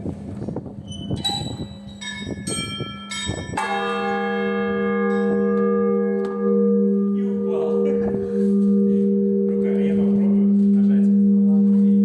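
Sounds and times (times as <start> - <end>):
light high church bells: 1.3 - 12.0
heavy bell strike: 2.0 - 12.0
low hum: 5.5 - 12.0.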